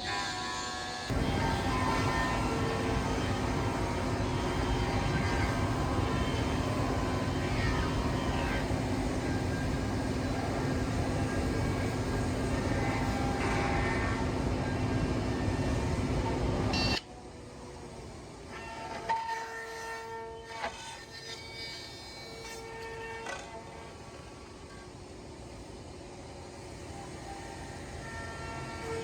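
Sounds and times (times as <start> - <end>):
router machine humming: 1.1 - 16.8.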